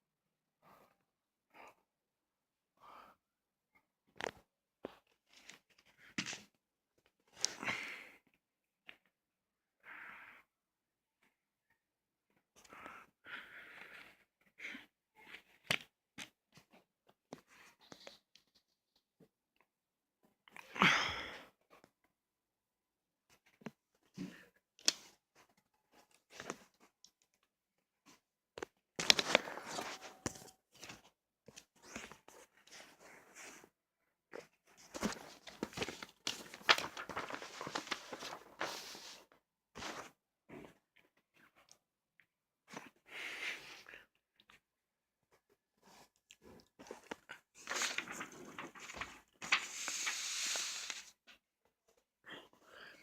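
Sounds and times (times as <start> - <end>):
packaging rustling: 34.9 - 38.7.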